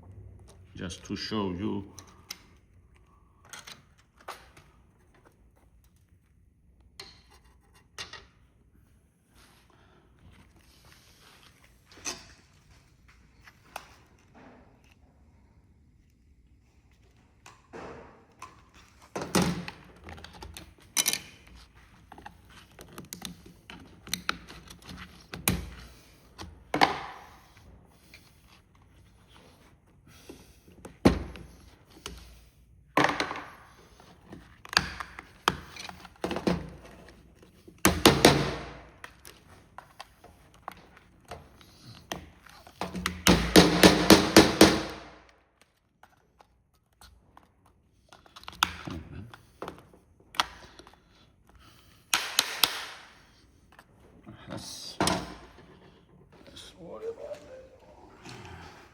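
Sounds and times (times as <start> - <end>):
plastic cracking and snapping: 52.1 - 53.2.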